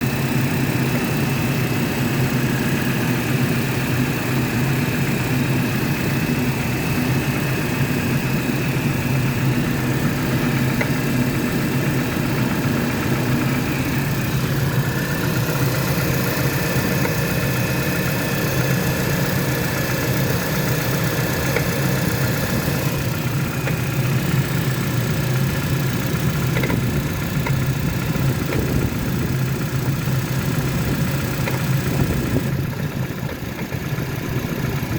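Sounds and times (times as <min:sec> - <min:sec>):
car engine idling: 0:00.0 - 0:34.9.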